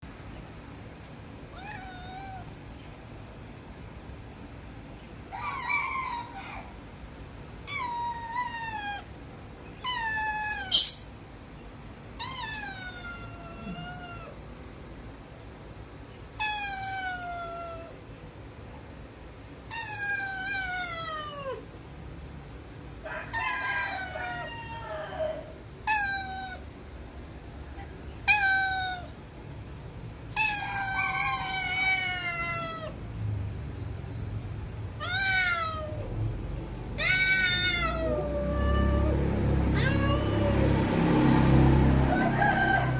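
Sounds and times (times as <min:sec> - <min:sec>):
cats meowing: 0:01.5 - 0:02.6, 0:07.6 - 0:11.1, 0:12.2 - 0:14.4, 0:16.3 - 0:18.0, 0:19.6 - 0:21.7, 0:23.6 - 0:26.7, 0:27.8 - 0:29.2, 0:30.2 - 0:33.0, 0:34.9 - 0:36.3, 0:36.9 - 0:41.3.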